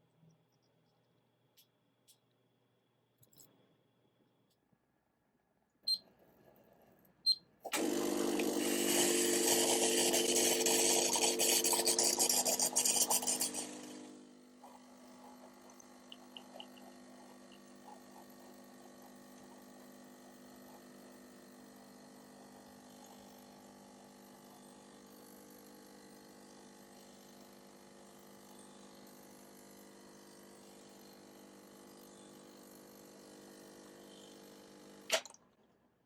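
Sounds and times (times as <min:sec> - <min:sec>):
steam wand hissing: 0:07.8 - 0:14.0.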